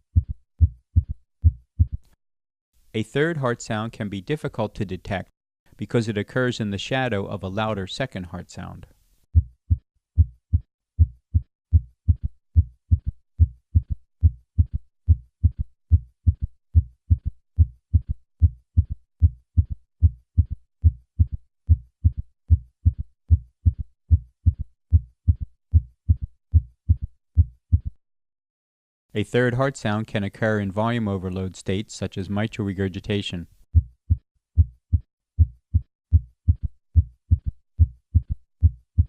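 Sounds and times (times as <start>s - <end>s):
heartbeat thumps: 0.0s - 2.0s, 9.4s - 28.0s, 33.8s - 39.0s.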